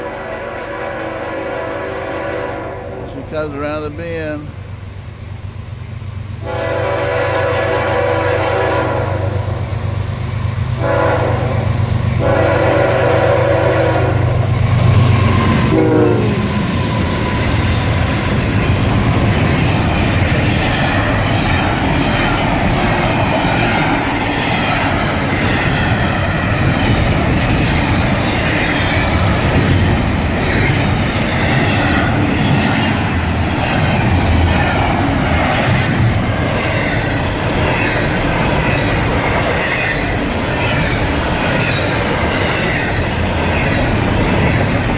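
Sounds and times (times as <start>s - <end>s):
locomotive horn blasts: 0.0s - 3.2s, 6.4s - 9.5s, 10.8s - 14.5s, 15.3s - 16.6s
train wheels clattering over rails: 9.6s - 44.9s.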